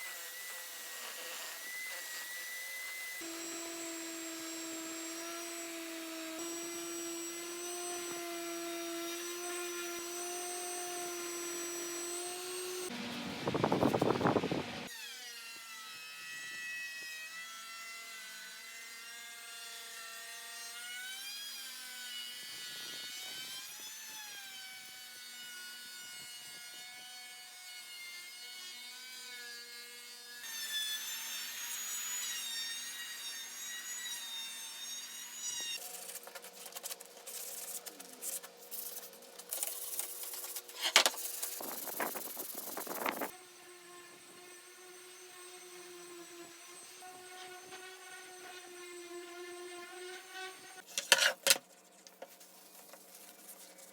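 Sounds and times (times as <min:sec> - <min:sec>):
power tool motor whine: 0:00.0 - 0:15.3, 0:41.5 - 0:50.9
rough cutting noise: 0:35.6 - 0:43.4
tool scraping wood: 0:35.7 - 0:43.3, 0:49.9 - 0:53.9.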